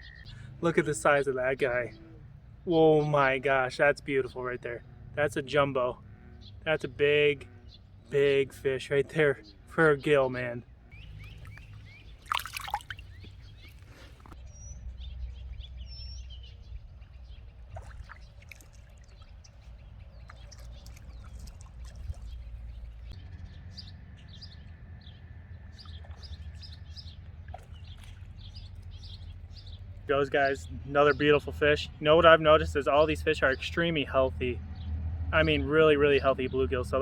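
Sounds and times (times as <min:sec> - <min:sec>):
small birds chirping: 0:00.0 - 0:37.0
thin bird trill: 0:10.9 - 0:23.5.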